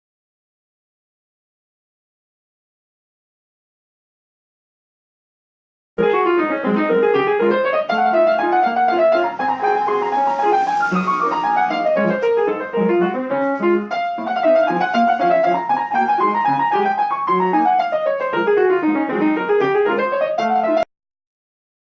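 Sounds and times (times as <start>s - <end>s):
piano arpeggios: 6.0s - 20.9s.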